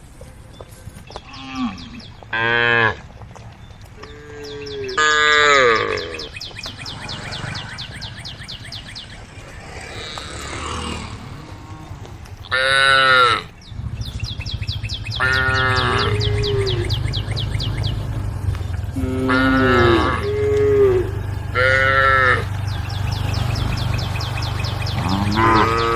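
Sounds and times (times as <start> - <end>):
cows mooing: 1.2 - 3.1, 4.0 - 13.6, 15.1 - 25.9
low rumble: 6.2 - 12.6, 13.5 - 25.9.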